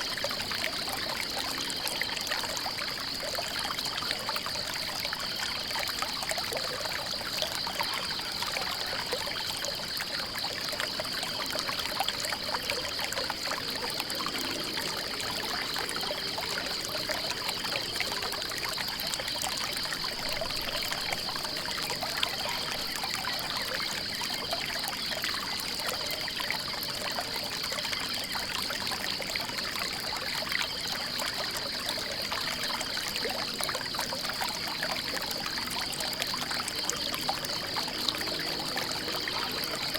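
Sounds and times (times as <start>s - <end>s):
water trickling in a stream: 0.0s - 39.9s.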